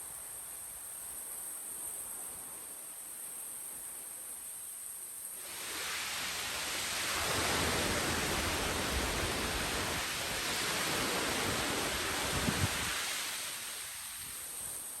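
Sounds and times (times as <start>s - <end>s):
surf breaking on beach: 5.4s - 14.9s.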